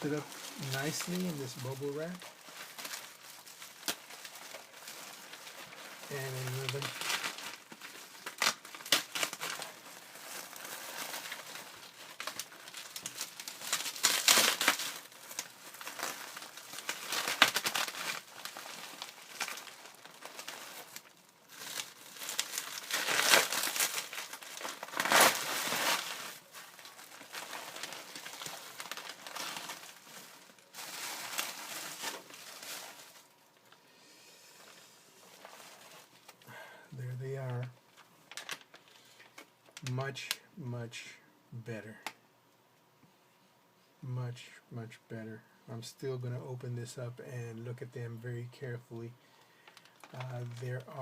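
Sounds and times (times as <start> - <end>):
bubble wrap crinkling: 0.0 - 40.4, 49.3 - 51.0.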